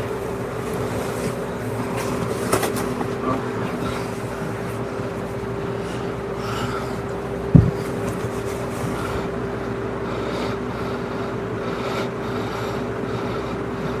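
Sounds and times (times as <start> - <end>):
steady mechanical hum: 0.0 - 14.0
loud low thump: 7.5 - 7.8.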